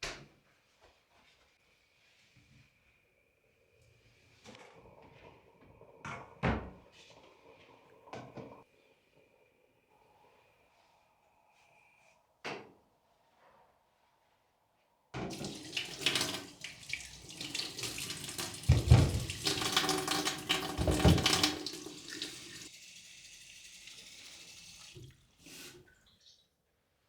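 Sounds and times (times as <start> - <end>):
tap running into sink: 15.2 - 22.7
knocks under water stream: 18.6 - 21.8.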